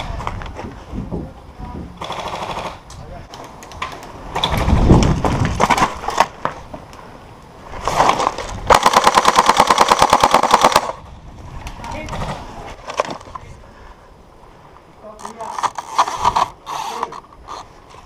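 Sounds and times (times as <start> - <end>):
airsoft gun full-auto burst: 2.0 - 2.8, 8.7 - 11.0.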